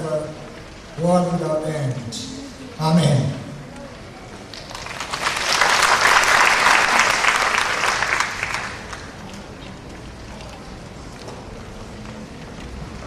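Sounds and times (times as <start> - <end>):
audience applauding: 4.5 - 9.2.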